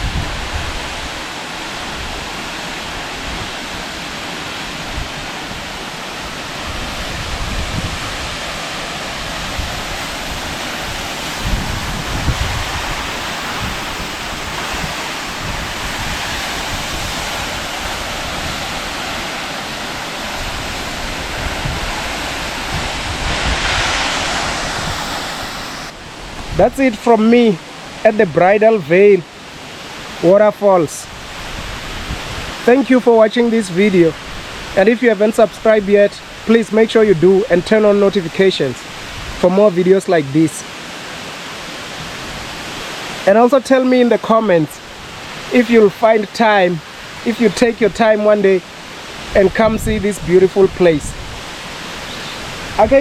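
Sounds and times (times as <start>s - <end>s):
wind buffeting microphone: 0.0s - 27.0s, 31.1s - 32.7s, 38.9s - 39.4s, 49.0s - 53.0s
waterfall splashing: 0.0s - 53.0s.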